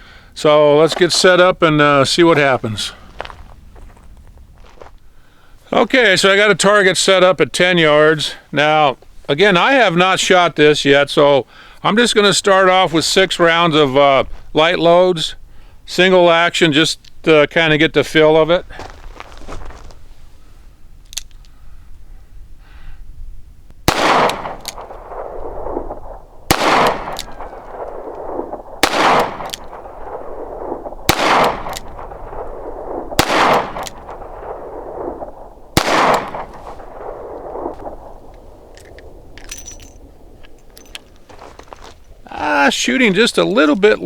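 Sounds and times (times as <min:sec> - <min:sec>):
revolver shots ringing: 0:23.9 - 0:37.8.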